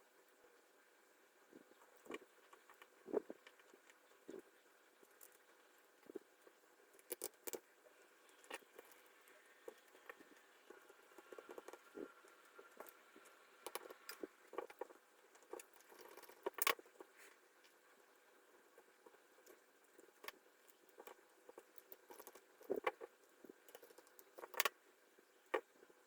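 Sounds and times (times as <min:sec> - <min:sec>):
plastic parts clicking and tapping: 0:12.8 - 0:16.8, 0:23.7 - 0:24.8.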